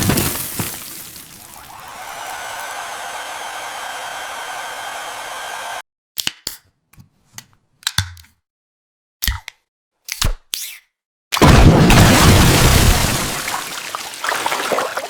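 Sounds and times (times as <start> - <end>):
hairdryer blowing: 1.6 - 5.8.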